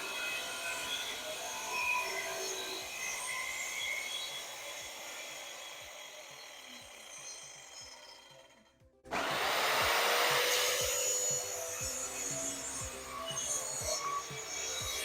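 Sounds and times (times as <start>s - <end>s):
saw cutting plywood: 0.0s - 15.0s
background music with beat: 8.8s - 15.0s.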